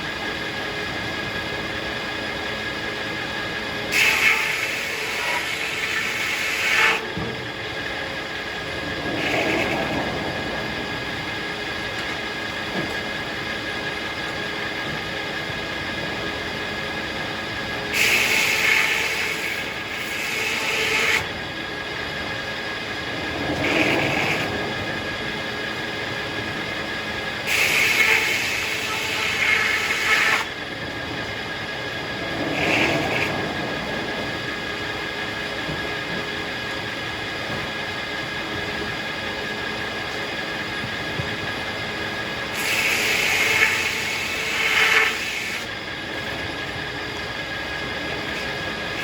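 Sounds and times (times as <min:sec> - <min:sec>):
circular sawmill running: 0:00.0 - 0:49.0
saw blade cutting log: 0:03.9 - 0:07.1, 0:09.2 - 0:10.0, 0:17.9 - 0:21.3, 0:27.4 - 0:30.5, 0:42.5 - 0:45.7.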